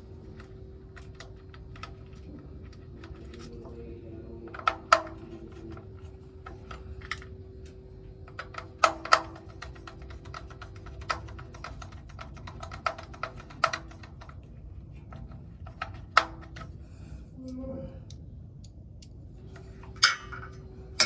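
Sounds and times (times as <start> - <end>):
faint steady hum: 0.0 - 21.0
tools clicking and tapping: 4.5 - 16.8, 18.1 - 21.0.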